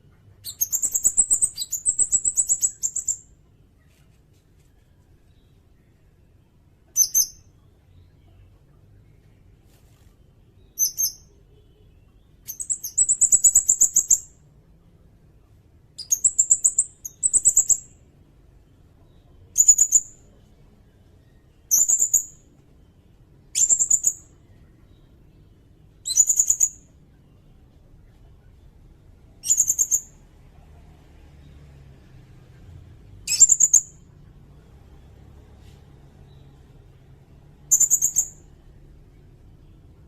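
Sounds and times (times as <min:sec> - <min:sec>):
bird singing high trills: 0:00.4 - 0:03.3, 0:29.4 - 0:30.2, 0:37.7 - 0:38.5.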